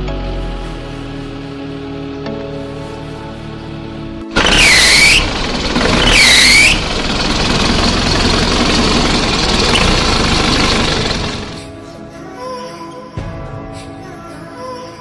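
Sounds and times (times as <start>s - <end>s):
engine squeal: 4.3s - 11.6s
diesel engine revving: 4.3s - 11.7s.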